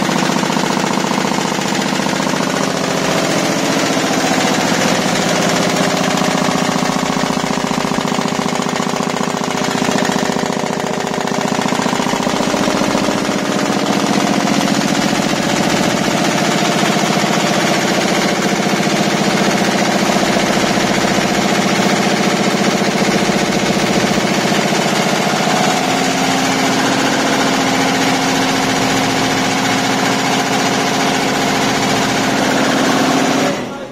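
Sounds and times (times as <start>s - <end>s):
machine drive hum: 0.0s - 33.9s.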